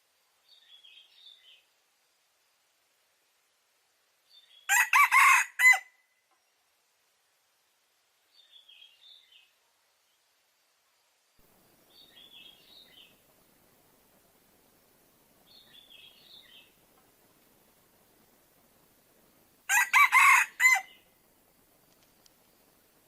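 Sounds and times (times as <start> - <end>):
rooster crowing: 4.7 - 6.0, 19.7 - 21.0.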